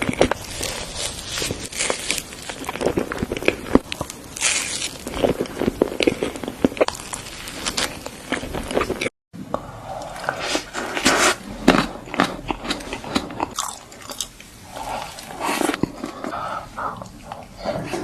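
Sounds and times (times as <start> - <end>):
crisp crunches: 0.0 - 9.1.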